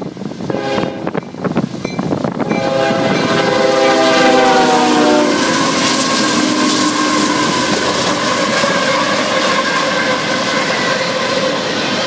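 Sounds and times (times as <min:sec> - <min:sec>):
train wheels clattering over rails: 0:05.4 - 0:12.0.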